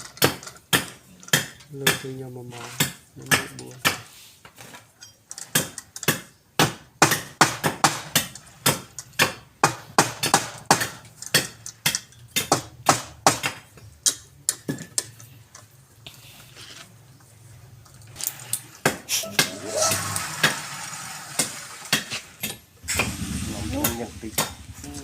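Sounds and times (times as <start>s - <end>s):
hammer blows: 19.2s - 20.7s.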